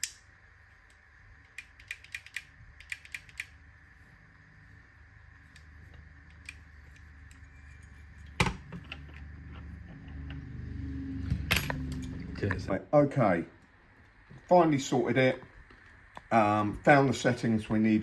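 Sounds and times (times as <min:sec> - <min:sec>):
keyboard and mouse clicks: 0:01.5 - 0:03.6.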